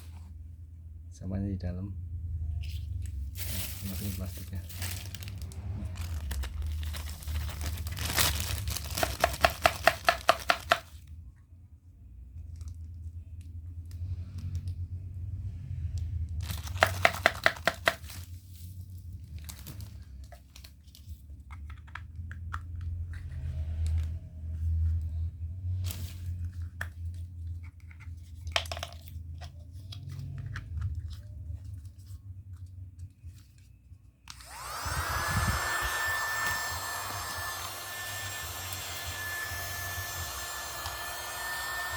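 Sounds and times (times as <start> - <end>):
plastic packaging crinkling: 3.3 - 11.0, 16.4 - 21.2
plastic clicks and crackles: 6.4 - 10.9
small vacuum motor whining: 34.3 - 41.9.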